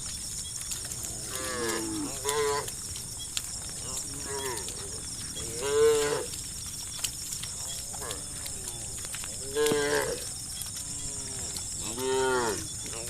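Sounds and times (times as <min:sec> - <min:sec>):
cows mooing: 0:00.9 - 0:02.7, 0:03.8 - 0:06.4, 0:07.6 - 0:13.0.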